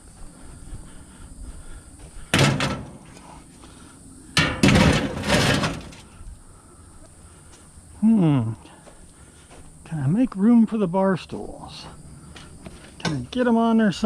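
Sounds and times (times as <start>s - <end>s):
scrap metal clattering and scraping: 2.4s - 3.3s, 4.4s - 6.2s.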